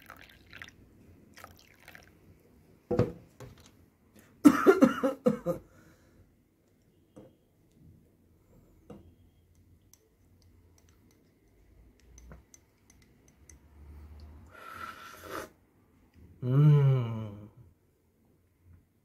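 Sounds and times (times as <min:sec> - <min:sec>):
faint clicks and taps: 0:08.9 - 0:14.3.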